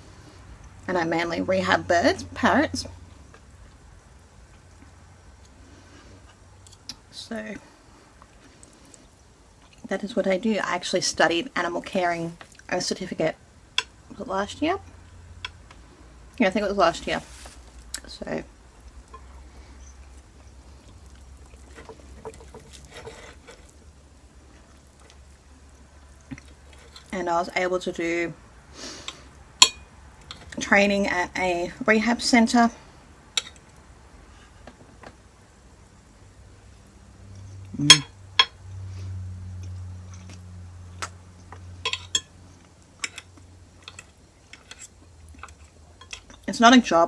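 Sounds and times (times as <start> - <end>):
low steady hum: 0.0 - 47.0
chewing and cutlery clicks: 39.6 - 46.5.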